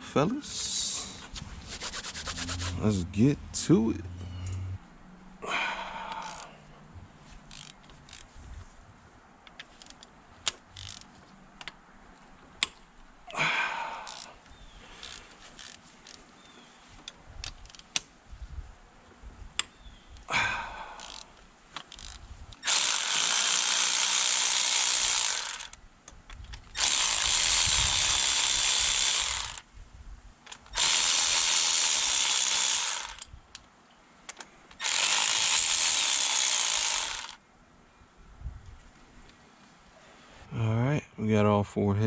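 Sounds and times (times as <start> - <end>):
power tool bursts: 22.0 - 25.8, 26.8 - 29.6, 30.7 - 33.2, 34.8 - 37.4.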